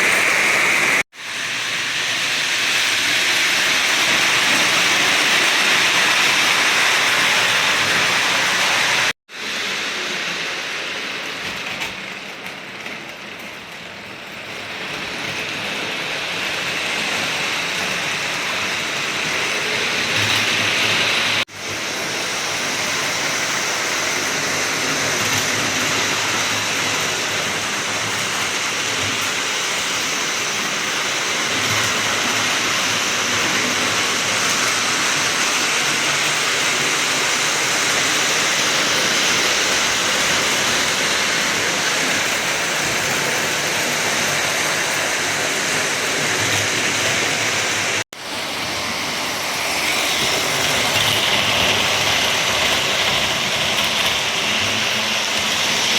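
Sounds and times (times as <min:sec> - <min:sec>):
model train running on track: 0:00.0 - 0:55.9.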